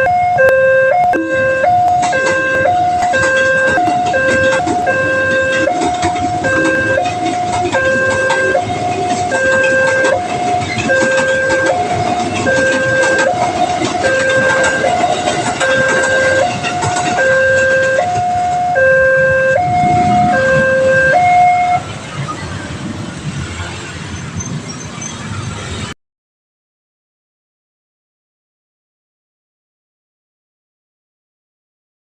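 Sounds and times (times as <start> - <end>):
level crossing two-tone alarm: 0.0 - 21.8
train rumbling and clattering: 1.0 - 25.9.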